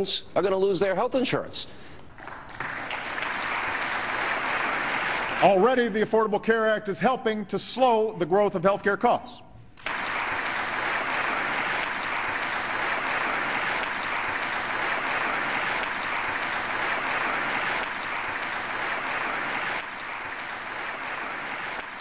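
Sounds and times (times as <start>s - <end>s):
crowd applauding: 2.1s - 5.9s, 9.8s - 22.0s.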